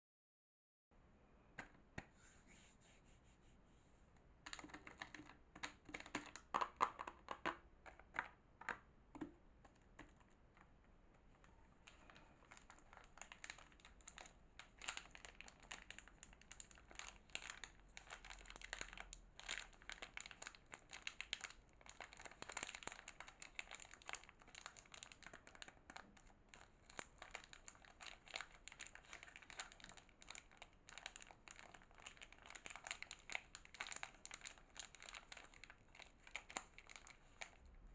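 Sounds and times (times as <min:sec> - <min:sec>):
wrapper crinkling: 0:11.8 - 0:37.7
wrapper tearing: 0:11.9 - 0:37.6.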